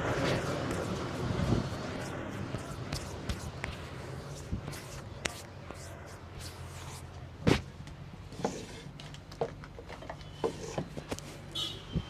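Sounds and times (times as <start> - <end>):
steady low hum: 0.0 - 8.3.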